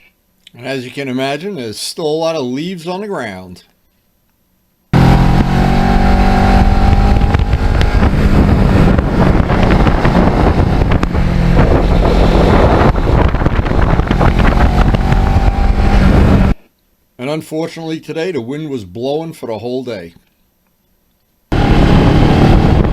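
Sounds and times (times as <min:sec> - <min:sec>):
motorcycle engine running at speed: 0:04.9 - 0:16.6, 0:21.5 - 0:22.9
wind noise on microphone: 0:05.0 - 0:16.6, 0:21.5 - 0:22.9.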